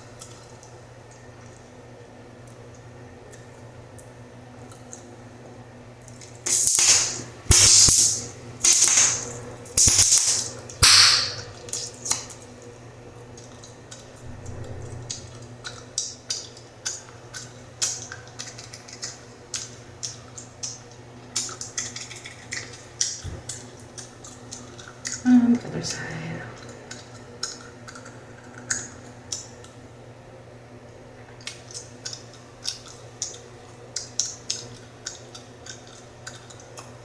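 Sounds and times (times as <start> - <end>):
bubblegum snapping and popping: 6.5 - 12.2.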